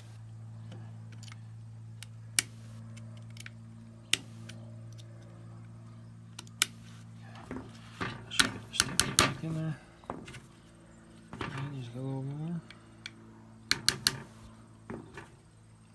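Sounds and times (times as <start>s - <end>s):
steady low hum: 0.0s - 15.9s
metal pistol parts clicking: 1.1s - 6.8s, 12.6s - 14.3s.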